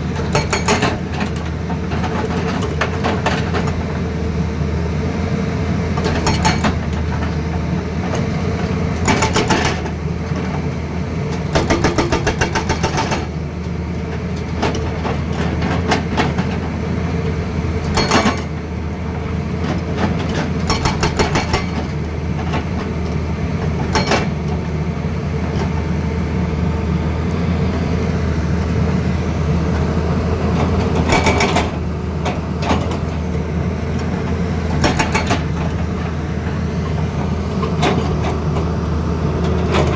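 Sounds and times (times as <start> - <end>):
diesel engine running: 0.0 - 39.9
hydraulic breaker hammering: 11.5 - 13.3.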